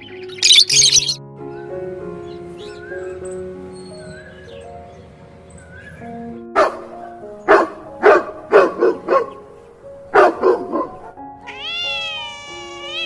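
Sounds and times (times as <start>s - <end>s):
soft background music: 0.0s - 13.0s
dog barking: 6.6s - 9.5s, 10.1s - 11.2s
cat meowing: 11.4s - 13.0s.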